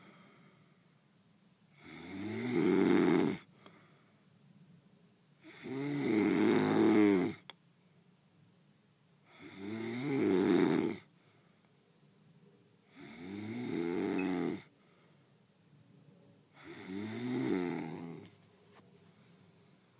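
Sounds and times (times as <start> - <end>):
man snoring: 1.8 - 3.5, 5.4 - 7.4, 9.3 - 11.1, 12.9 - 14.7, 16.6 - 18.3.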